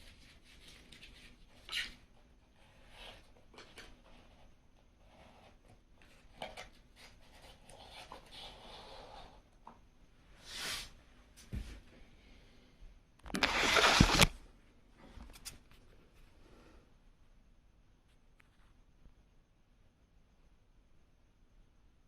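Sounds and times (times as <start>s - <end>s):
rustling and scraping: 13.3s - 14.4s.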